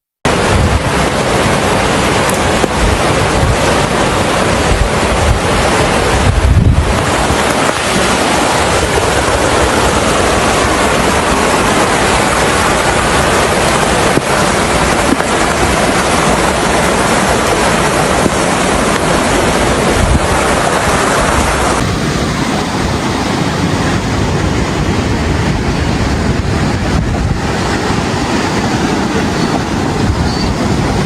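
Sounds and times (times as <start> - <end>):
floodwater rushing: 0.3 - 31.0
wind on microphone: 0.3 - 31.0.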